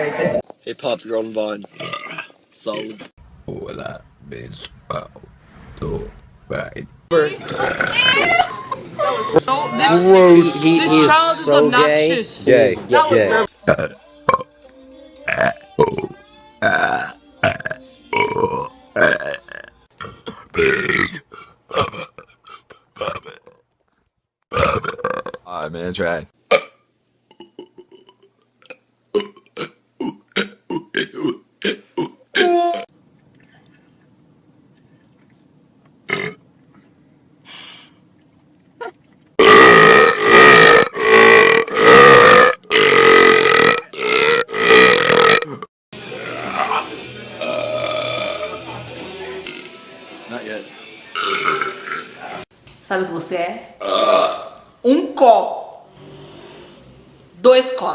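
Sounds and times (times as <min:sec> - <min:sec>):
person belching: 0:13.7 - 0:14.5, 0:15.3 - 0:22.4, 0:23.0 - 0:23.6, 0:24.5 - 0:25.4, 0:26.5 - 0:32.8, 0:36.1 - 0:36.4, 0:39.4 - 0:48.7, 0:51.1 - 0:52.2, 0:53.8 - 0:54.6.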